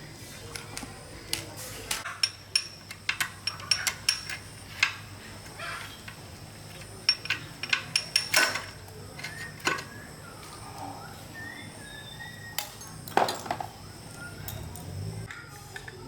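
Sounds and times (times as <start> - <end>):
metal tools clinking: 0.5 - 10.6, 12.6 - 15.1.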